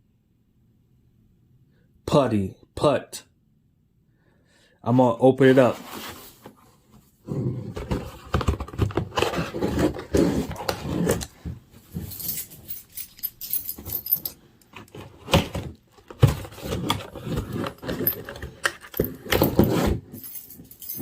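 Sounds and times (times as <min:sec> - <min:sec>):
packaging rustling and rattling: 0:07.8 - 0:21.0.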